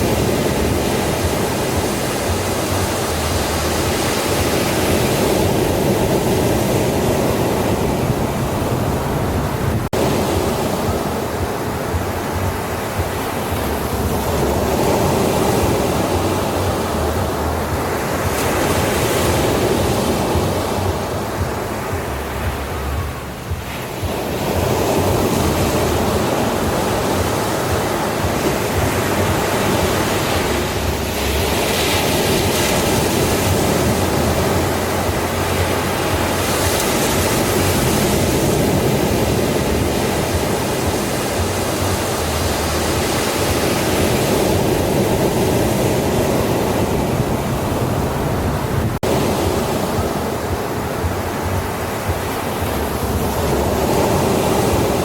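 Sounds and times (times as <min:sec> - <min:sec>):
ocean surf washing onto beach: 0:00.0 - 0:55.0.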